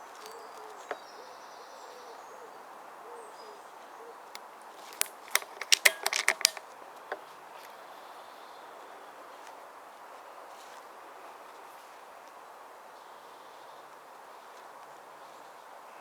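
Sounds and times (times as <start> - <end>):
bird cooing: 0.3 - 4.3
sharp snaps and clicks: 4.3 - 7.2.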